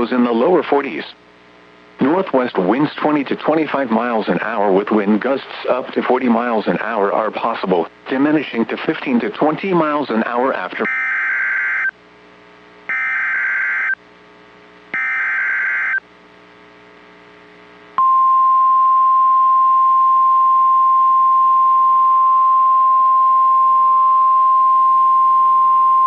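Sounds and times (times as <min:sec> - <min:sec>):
steady warning alarm tone: 0:10.8 - 0:11.9, 0:12.9 - 0:14.0, 0:15.0 - 0:16.0
warbling data screech: 0:12.9 - 0:14.0, 0:15.0 - 0:16.0.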